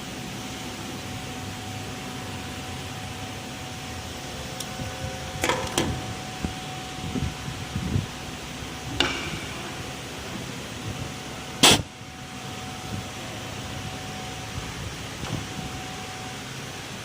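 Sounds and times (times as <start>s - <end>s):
thin steady whine: 0.0s - 17.0s
workshop machinery hum: 0.0s - 17.0s
sharp clicks and knocks: 5.4s - 6.0s, 8.9s - 9.9s.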